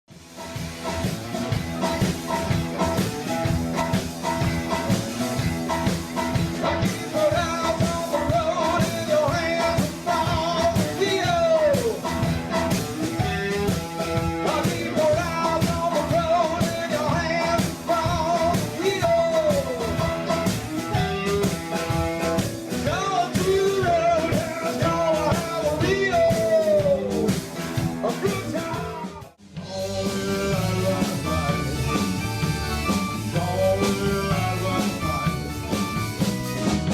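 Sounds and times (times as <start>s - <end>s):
rock band playing: 0.1s - 36.9s
lead line sliding down: 0.2s - 8.4s, 29.7s - 36.9s.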